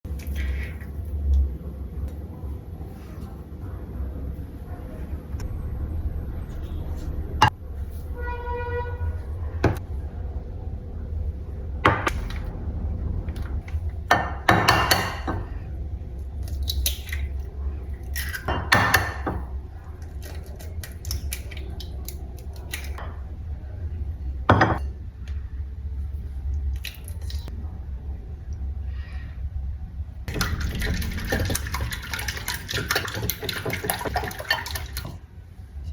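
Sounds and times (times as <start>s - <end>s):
steady low hum: 0.0s - 35.9s
utensils and bowls clinking: 30.3s - 35.2s.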